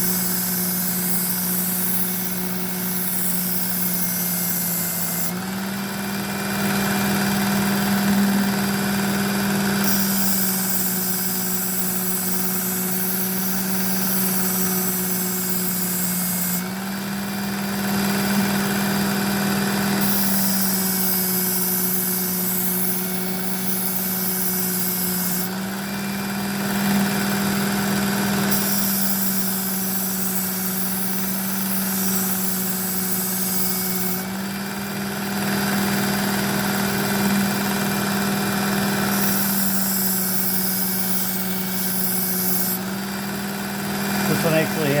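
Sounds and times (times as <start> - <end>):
knife rasping on abrasive belt: 0.0 - 5.3, 9.8 - 16.6, 20.0 - 25.6, 28.5 - 34.3, 39.1 - 42.9
belt sharpener motor hum: 0.0 - 45.0.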